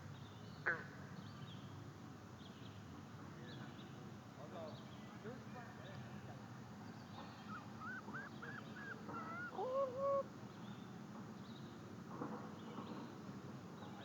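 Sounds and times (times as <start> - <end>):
loon calling: 7.3 - 10.3.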